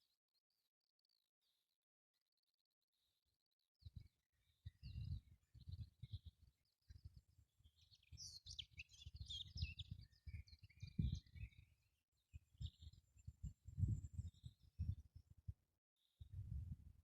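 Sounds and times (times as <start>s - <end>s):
birds chirping faintly: 3.8s - 16.8s.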